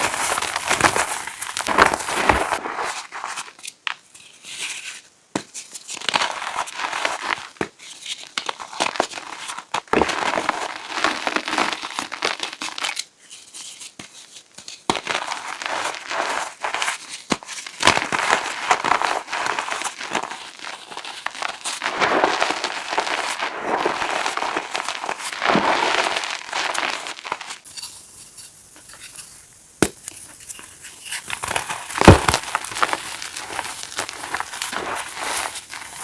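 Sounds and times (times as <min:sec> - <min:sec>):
chalk crunching: 0:00.0 - 0:03.5, 0:28.3 - 0:36.0.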